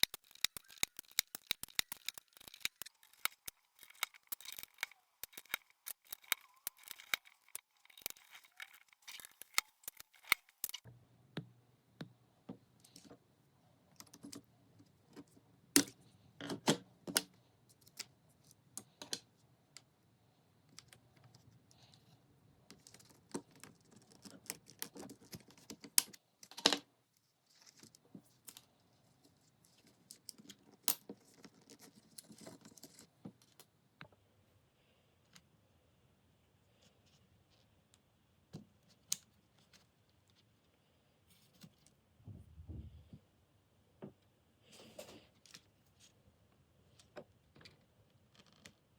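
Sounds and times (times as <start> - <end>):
plastic keycaps clicking: 0.0 - 10.8.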